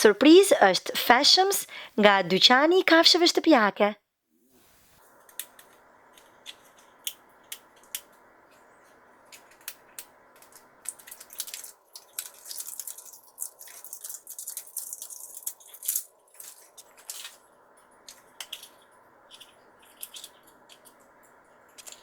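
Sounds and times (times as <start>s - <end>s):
plastic wrapper crinkling: 5.0s - 22.0s.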